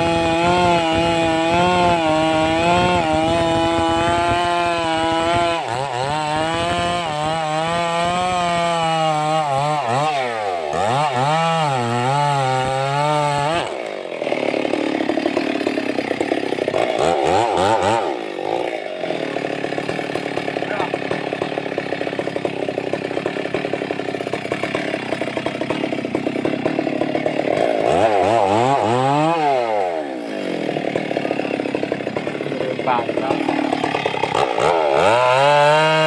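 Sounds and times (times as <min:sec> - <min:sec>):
chainsaw cutting at high revs: 0:00.0 - 0:36.0.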